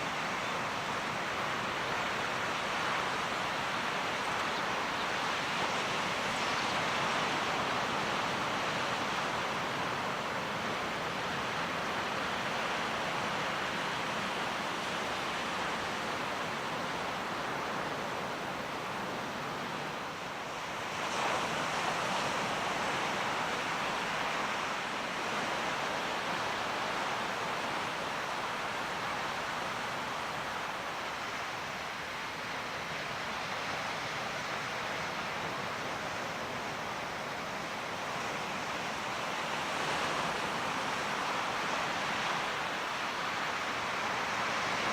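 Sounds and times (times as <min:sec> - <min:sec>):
sea waves: 0:00.0 - 0:44.9
wind: 0:00.0 - 0:44.9.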